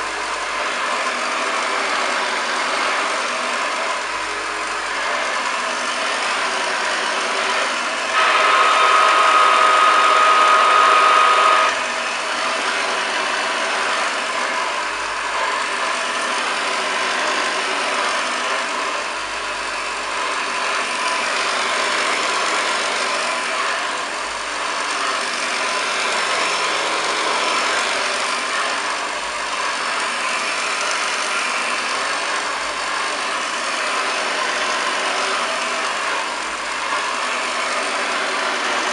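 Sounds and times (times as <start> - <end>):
vacuum cleaner running: 0.0 - 38.9.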